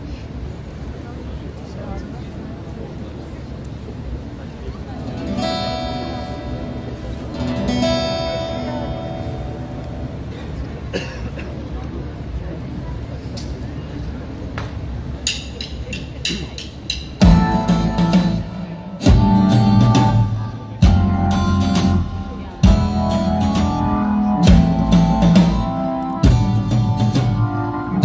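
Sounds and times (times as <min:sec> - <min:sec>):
live rock band playing: 0:05.0 - 0:10.3, 0:16.3 - 0:28.0.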